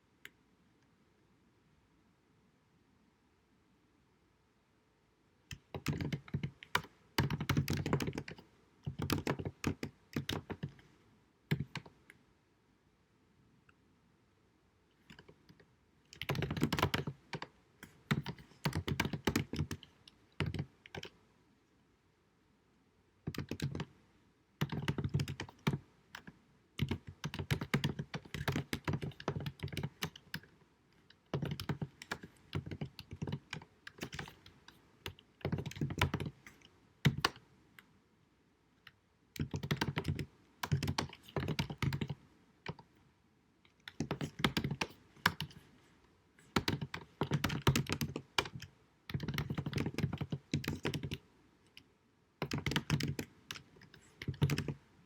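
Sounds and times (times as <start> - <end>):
typing on computer keyboard: 5.5 - 10.9, 11.5 - 12.0, 15.0 - 21.2, 23.3 - 23.9, 24.6 - 37.4, 39.4 - 42.9, 43.7 - 45.7, 46.4 - 54.8.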